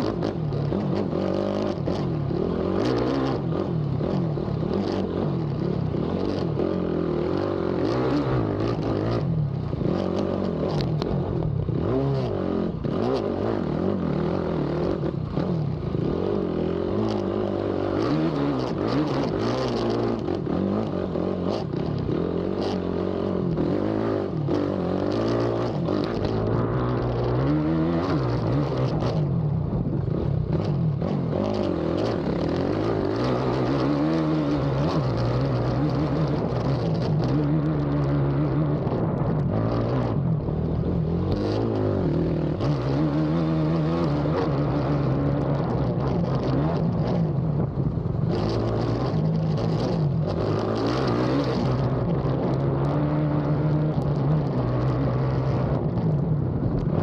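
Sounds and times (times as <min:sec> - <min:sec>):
atv engine revving: 0:00.0 - 0:55.8.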